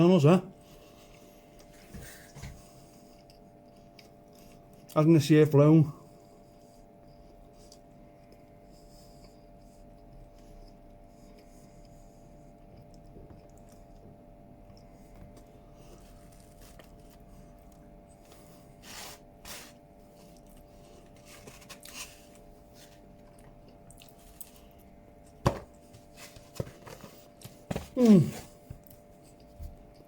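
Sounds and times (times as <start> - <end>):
electrical hum: 0.0 - 30.0
chewing: 2.9 - 5.0, 6.5 - 18.4, 22.9 - 25.4.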